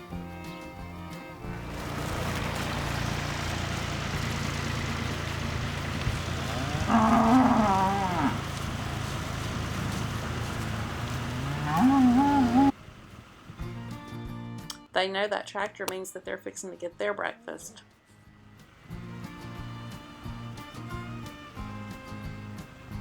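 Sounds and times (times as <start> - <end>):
tractor engine running: 0.0 - 14.9, 18.2 - 23.0
cattle mooing: 4.8 - 12.7.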